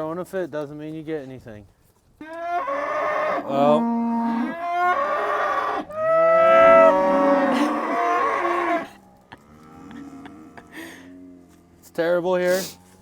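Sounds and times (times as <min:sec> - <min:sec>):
cattle mooing: 0:02.2 - 0:11.9.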